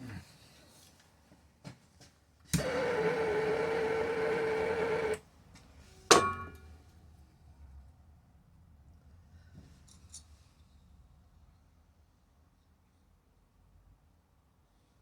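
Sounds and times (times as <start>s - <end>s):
gas torch lighting click: 2.5s - 5.2s
gas torch hissing jet: 2.6s - 5.2s.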